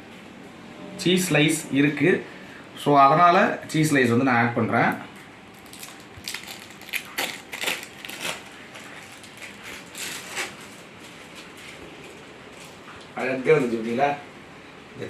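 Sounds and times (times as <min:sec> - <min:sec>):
cheese packaging crinkling: 0:05.5 - 0:13.8.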